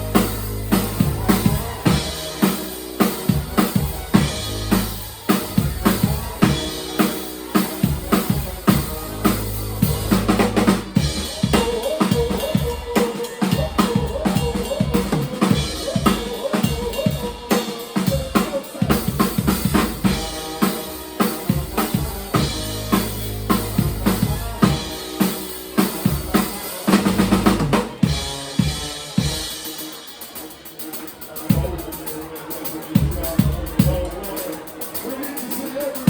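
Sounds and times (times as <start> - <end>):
low bass notes: 0.0 - 12.8, 18.8 - 29.5
drum kit beat: 0.0 - 36.0
live band playing: 0.0 - 36.0.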